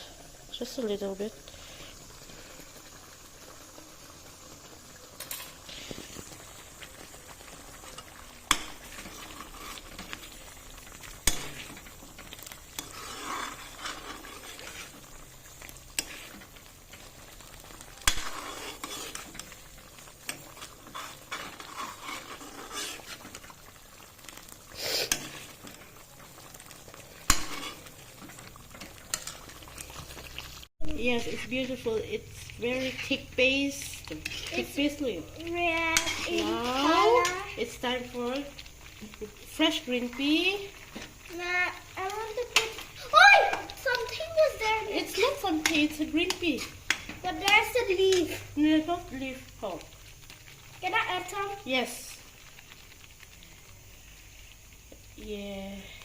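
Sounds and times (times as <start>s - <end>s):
masala sizzling in a pan: 0.0s - 56.0s
spoon stirring and scraping: 5.2s - 39.4s, 43.6s - 48.6s.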